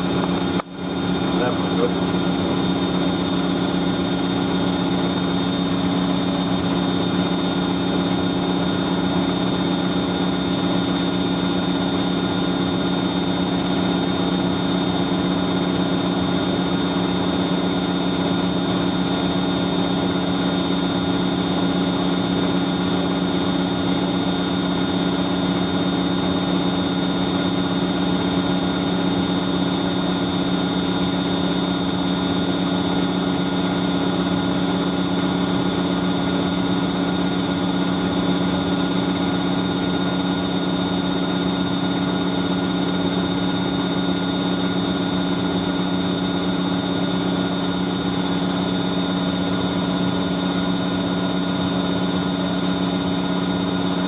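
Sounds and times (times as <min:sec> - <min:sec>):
washing machine spinning: 0:00.0 - 0:54.0.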